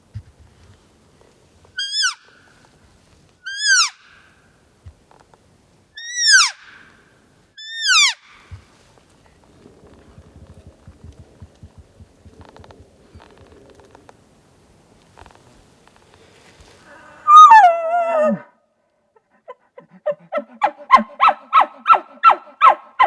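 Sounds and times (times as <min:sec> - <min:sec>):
faint low rustle: 0:00.0 - 0:03.4, 0:08.4 - 0:17.0.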